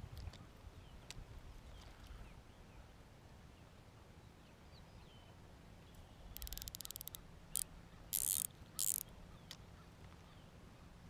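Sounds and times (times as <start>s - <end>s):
fishing reel ratchet clicks: 6.3s - 9.1s
fishing reel whirring: 6.3s - 9.1s.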